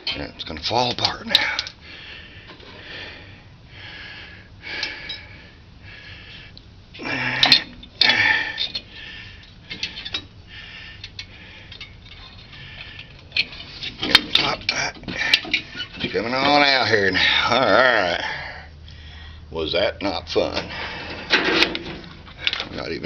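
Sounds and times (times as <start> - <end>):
metal tools clinking and scraping: 0.0 - 1.8, 7.3 - 10.3, 11.0 - 17.6, 20.4 - 23.0
metal clanks: 7.2 - 10.4, 11.0 - 17.0, 20.5 - 23.0.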